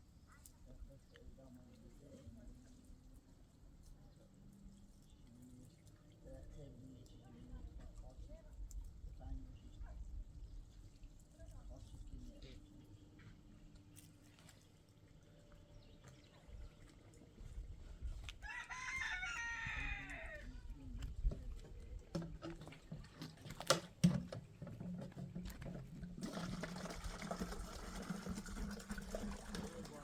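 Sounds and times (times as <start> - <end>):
rooster crowing: 18.4 - 20.5.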